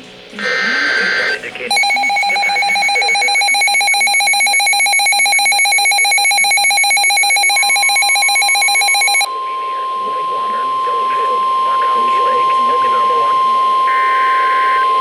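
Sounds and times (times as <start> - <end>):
screeching data bursts: 0.4 - 9.3, 10.2 - 15.0
two-tone buzzing alert signal: 0.4 - 9.3.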